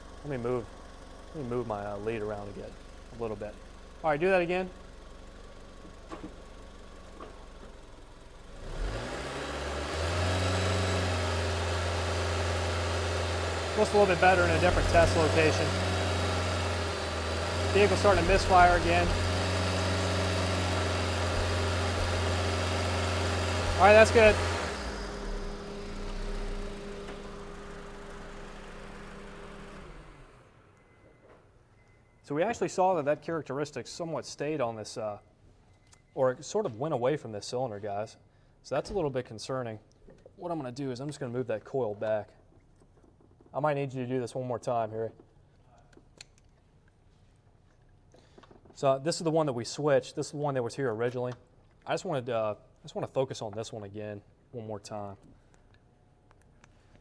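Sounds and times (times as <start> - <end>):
car engine idling and droning: 0.0 - 30.9.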